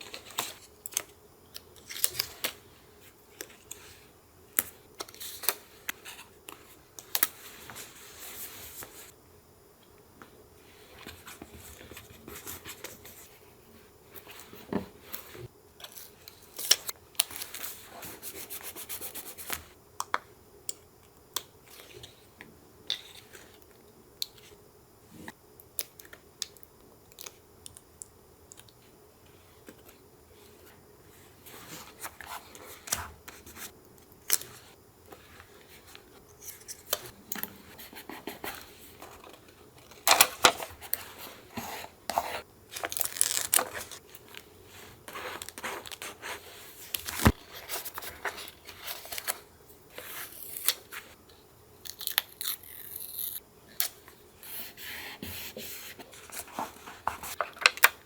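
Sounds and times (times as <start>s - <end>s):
paper rustling and rubbing: 54.5s - 57.7s.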